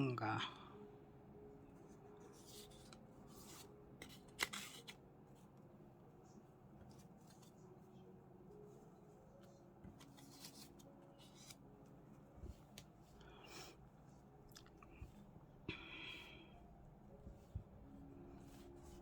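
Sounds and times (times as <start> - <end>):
paper rustling: 2.2 - 5.0, 9.8 - 11.6.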